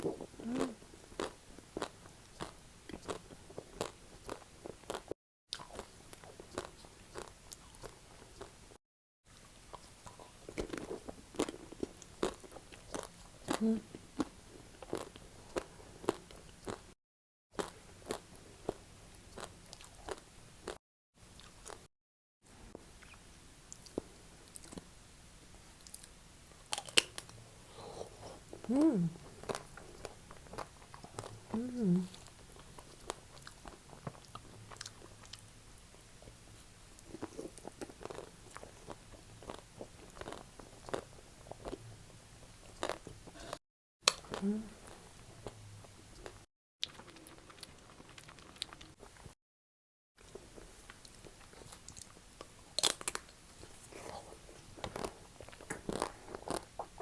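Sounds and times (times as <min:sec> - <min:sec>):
soft wet chewing: 0:00.0 - 0:08.6, 0:09.3 - 0:16.9, 0:22.9 - 0:24.9, 0:25.8 - 0:41.8, 0:42.4 - 0:49.4, 0:50.2 - 0:57.0
bites and crunches of chocolate: 0:25.9 - 0:27.4, 0:51.6 - 0:53.3, 0:54.8 - 0:57.0
wet chewing and lip smacks: 0:46.2 - 0:49.3.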